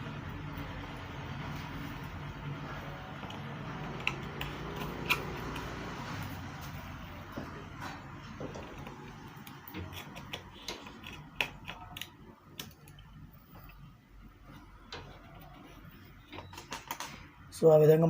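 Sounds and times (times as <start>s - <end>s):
small parts clicking and tapping: 8.4s - 13.8s, 14.9s - 17.3s.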